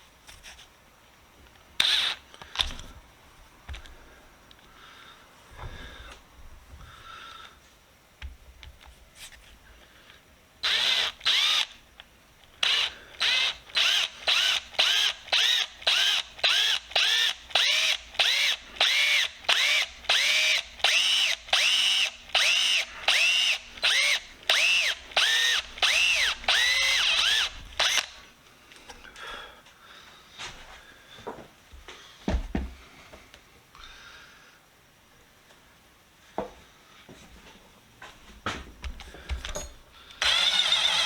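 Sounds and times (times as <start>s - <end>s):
power tool motor pulses: 10.6s - 11.8s, 12.6s - 28.2s, 40.2s - 41.0s.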